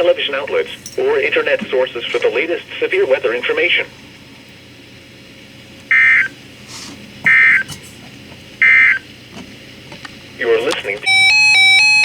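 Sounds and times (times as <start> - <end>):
radio receiver hiss: 0.0 - 4.7.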